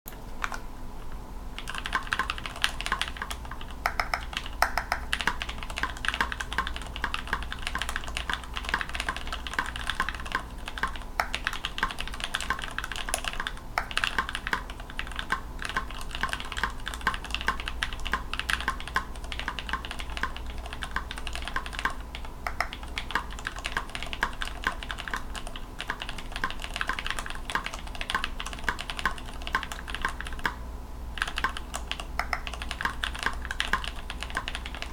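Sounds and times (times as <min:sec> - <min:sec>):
faint steady hum: 0:00.1 - 0:34.9
mechanical keyboard typing: 0:01.6 - 0:30.6, 0:31.2 - 0:34.9.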